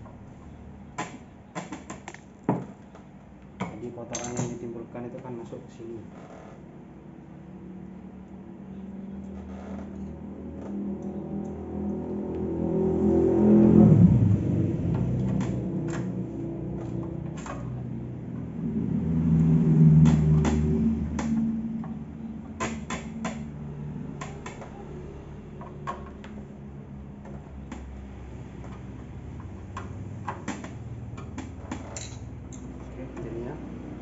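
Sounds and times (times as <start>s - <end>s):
low wavering hum: 7.2s - 34.0s.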